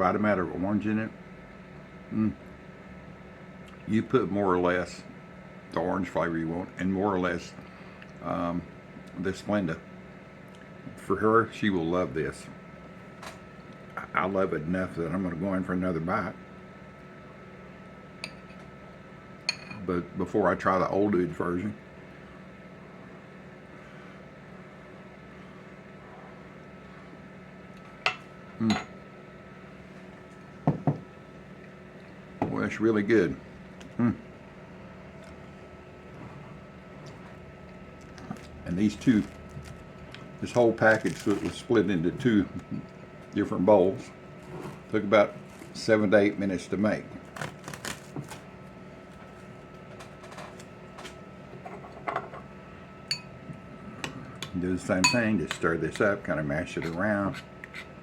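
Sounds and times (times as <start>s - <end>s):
steady low hum: 0.0s - 58.0s
spoon tapping a bowl: 53.1s - 53.3s.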